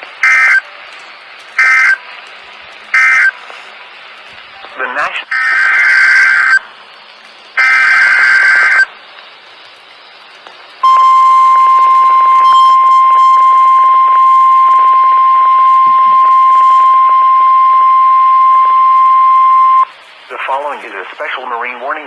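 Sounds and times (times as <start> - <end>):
raspy digital data bursts: 0.0 - 22.0
steady alarm tone: 0.2 - 0.6, 1.6 - 2.0, 2.9 - 3.4, 5.3 - 6.6, 7.6 - 8.9, 10.8 - 19.9.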